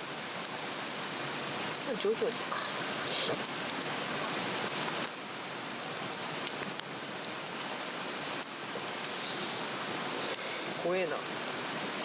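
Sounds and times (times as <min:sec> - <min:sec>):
fire crackling and popping: 0:00.0 - 0:12.0.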